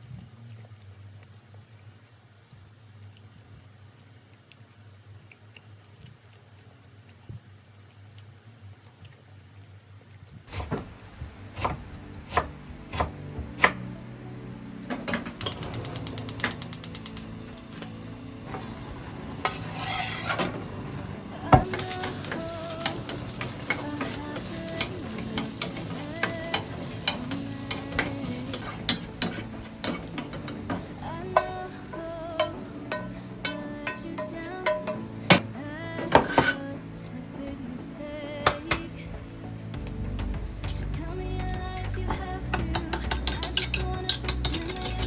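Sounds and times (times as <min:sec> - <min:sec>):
utensils clicking and knocking: 0:14.9 - 0:18.8, 0:21.4 - 0:36.6, 0:39.8 - 0:45.0
rapid even clicking: 0:15.1 - 0:18.0.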